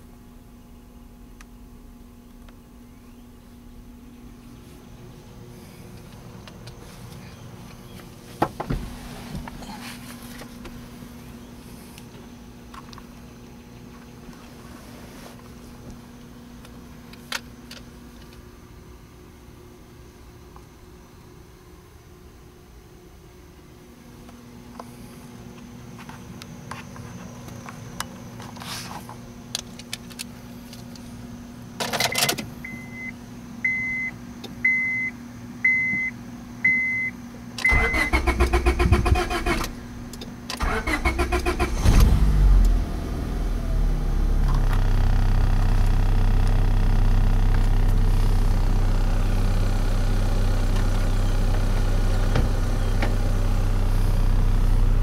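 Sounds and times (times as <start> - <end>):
car dashboard chime beeping: 36.7 - 37.1
starter cranking engine: 37.6 - 39.7, 40.6 - 42.4
car engine idling: 37.7 - 55.0.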